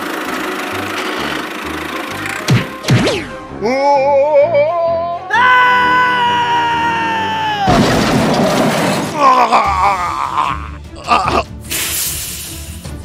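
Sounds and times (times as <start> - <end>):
wavering voice-like melody: 3.5 - 5.4.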